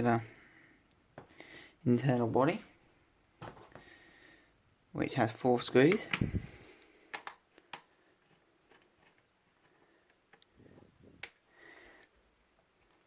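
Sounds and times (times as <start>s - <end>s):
screwdriver clicks and taps: 7.1s - 7.9s.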